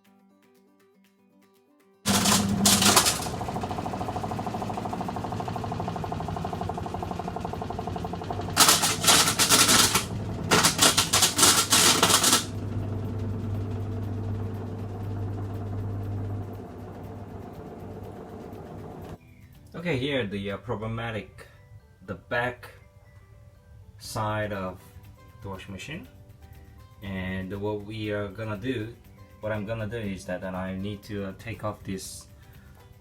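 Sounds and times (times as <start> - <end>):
loud rattling clatter: 2.1 - 19.2
washing machine humming: 2.1 - 19.2
faint music: 2.1 - 33.0.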